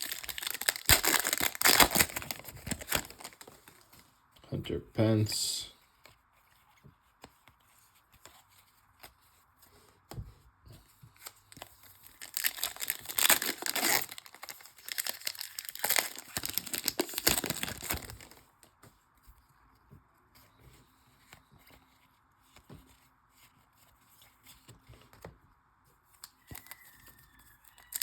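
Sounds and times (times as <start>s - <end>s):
card pack wrapper tearing: 0.0s - 3.8s, 11.6s - 18.4s.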